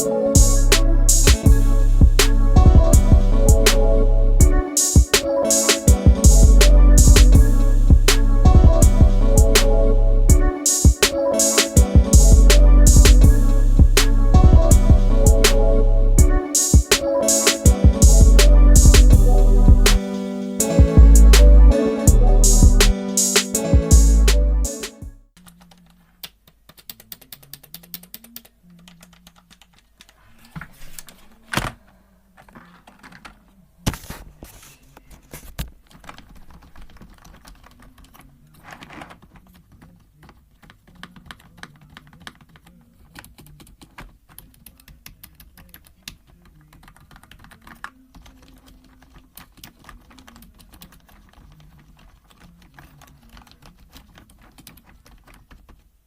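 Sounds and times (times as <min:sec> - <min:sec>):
typing on keyboard: 0:04.7 - 0:07.4, 0:10.5 - 0:13.3, 0:24.7 - 0:30.2, 0:35.8 - 0:55.9.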